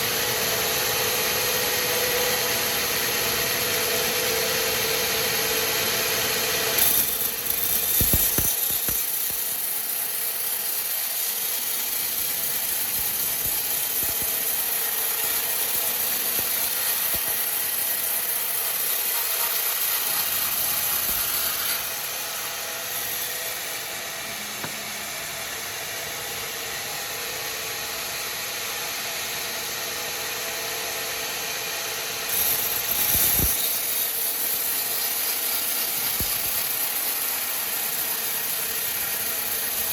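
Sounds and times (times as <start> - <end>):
sawmill machinery hissing: 0.0 - 30.7, 31.3 - 39.9
knocks: 24.6 - 24.9.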